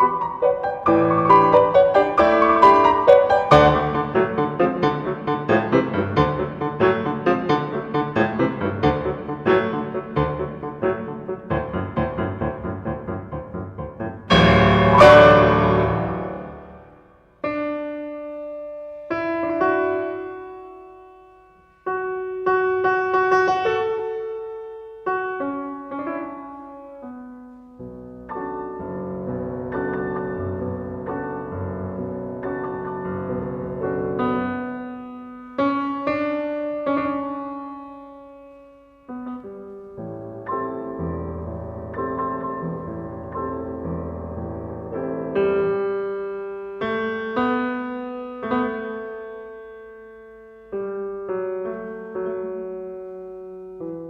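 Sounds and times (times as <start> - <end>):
solo piano music: 0.0 - 54.0.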